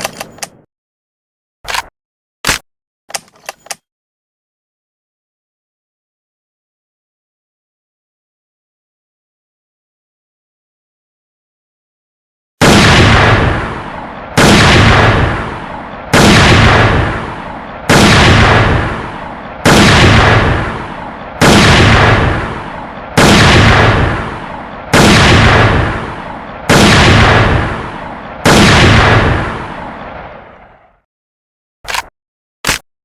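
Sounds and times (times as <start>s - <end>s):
rifle shots echoing: 12.6s - 30.9s.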